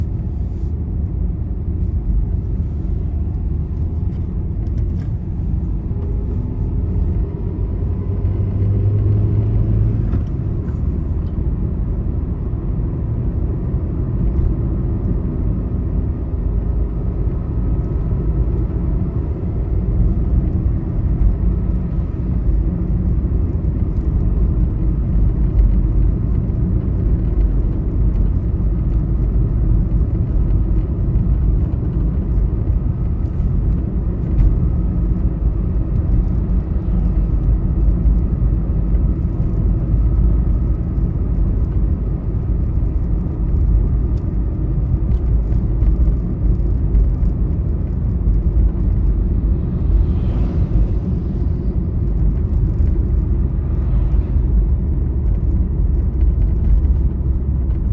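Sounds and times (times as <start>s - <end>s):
low hum: 0.0s - 13.4s, 29.6s - 57.9s
vehicle highway rumble: 0.0s - 57.9s.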